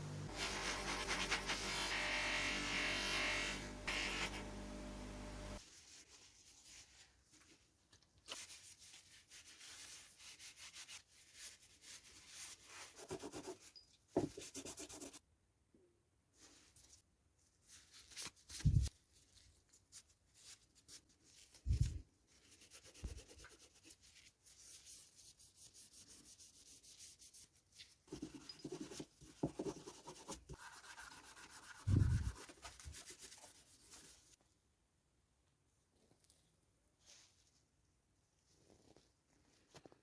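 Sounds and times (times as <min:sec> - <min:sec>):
quick scratchy strokes: 0:00.2 - 0:04.5, 0:30.6 - 0:34.4.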